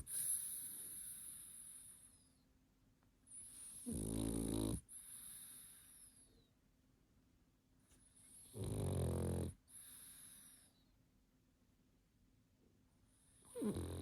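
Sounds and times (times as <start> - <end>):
dog snoring: 3.3 - 6.0, 8.3 - 10.7, 13.3 - 14.0.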